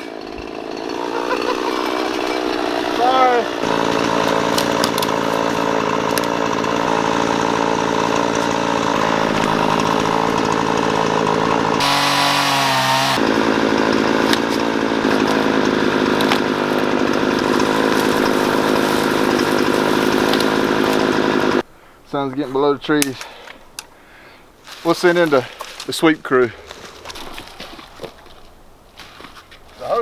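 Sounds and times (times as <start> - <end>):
chainsaw cutting at high revs: 0.0 - 21.6.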